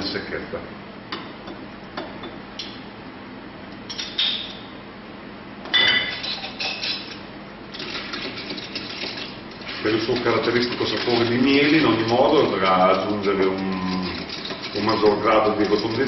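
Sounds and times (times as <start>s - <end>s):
glass and ice clinking: 5.7s - 16.0s.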